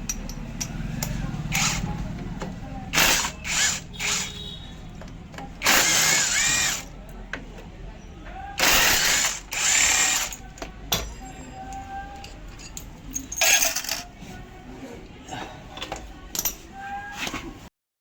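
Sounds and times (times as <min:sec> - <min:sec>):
power tool running: 0:01.5 - 0:01.9, 0:02.9 - 0:04.5, 0:05.6 - 0:06.9, 0:08.6 - 0:10.4.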